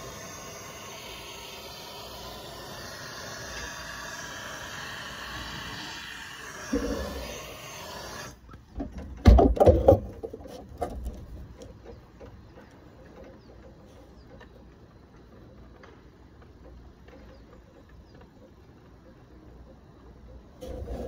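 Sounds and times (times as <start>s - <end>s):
gas torch hissing: 0.0s - 8.5s.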